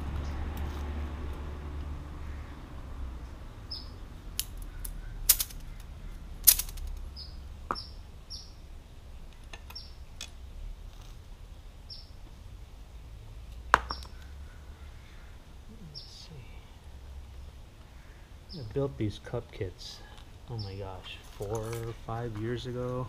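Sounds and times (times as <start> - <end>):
small bird chirping: 3.7 - 4.0, 7.0 - 10.2, 11.9 - 12.2, 13.9 - 16.6
metal clinks and knocks: 6.4 - 7.0.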